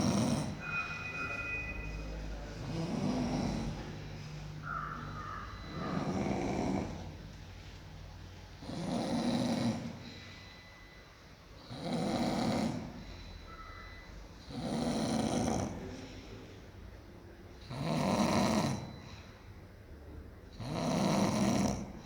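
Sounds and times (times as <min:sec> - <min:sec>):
loud snoring: 0:00.0 - 0:01.9, 0:02.6 - 0:07.2, 0:08.6 - 0:10.2, 0:11.6 - 0:13.2, 0:14.4 - 0:16.0, 0:17.6 - 0:19.1, 0:20.6 - 0:22.0.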